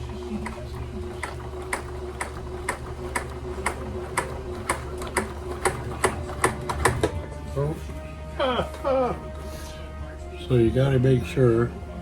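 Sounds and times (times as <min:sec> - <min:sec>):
sewing machine stitching: 0:00.0 - 0:07.2.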